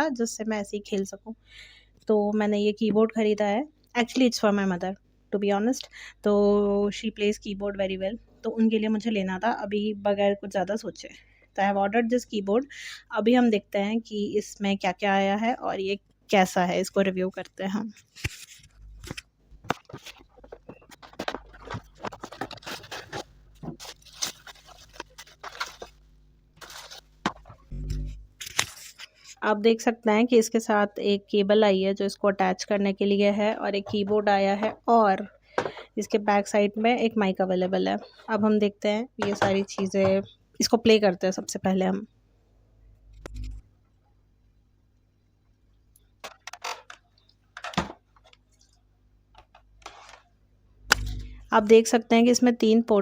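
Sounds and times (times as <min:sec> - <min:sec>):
packaging rustling: 0:18.0 - 0:27.8.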